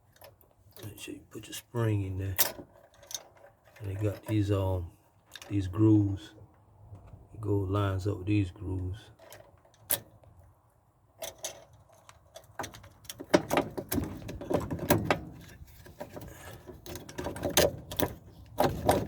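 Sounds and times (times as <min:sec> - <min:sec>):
plastic parts clicking and knocking: 0:11.2 - 0:19.0.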